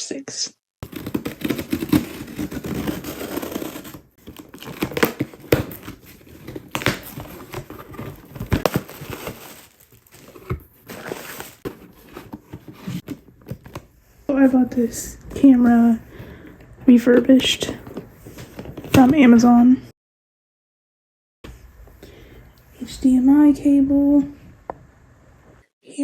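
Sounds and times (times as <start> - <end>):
packaging crinkling and tearing: 0.8 - 13.9.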